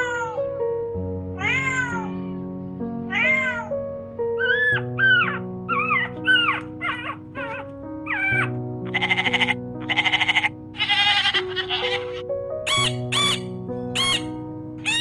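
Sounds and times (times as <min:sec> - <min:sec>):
cat meowing: 0:00.0 - 0:00.5, 0:01.4 - 0:02.4, 0:03.1 - 0:03.8, 0:04.4 - 0:15.0
background music: 0:00.0 - 0:15.0
sheep or goat bleating: 0:08.8 - 0:12.2.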